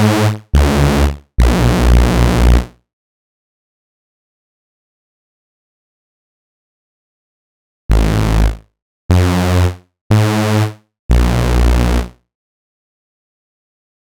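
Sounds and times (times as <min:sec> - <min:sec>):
synthesizer notes with deep bass: 0:00.0 - 0:02.7, 0:07.9 - 0:12.1.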